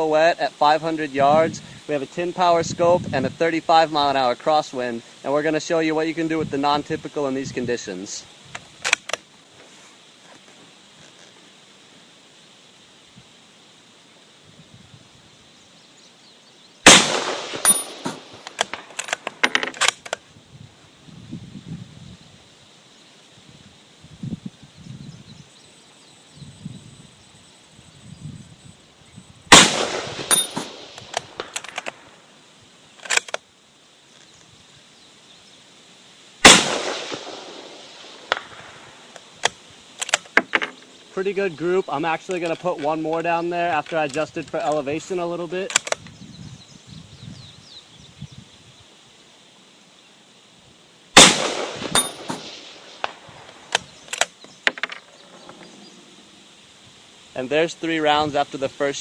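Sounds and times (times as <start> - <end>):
rifle shots: 16.8 - 20.0, 29.5 - 32.0, 36.4 - 39.1, 51.2 - 53.8.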